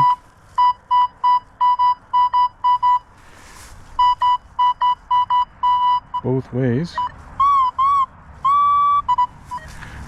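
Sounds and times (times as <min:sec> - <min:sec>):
metal detector beeping: 0:00.0 - 0:03.1, 0:04.0 - 0:10.0.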